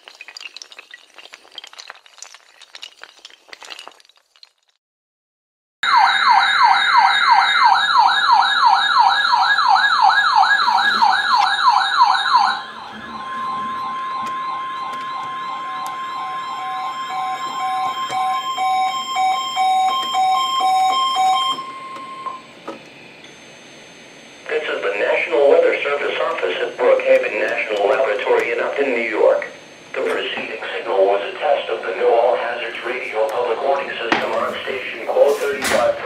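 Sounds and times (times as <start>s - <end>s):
electronic warbling siren: 5.8s - 22.6s
steady alarm tone: 5.8s - 36.0s.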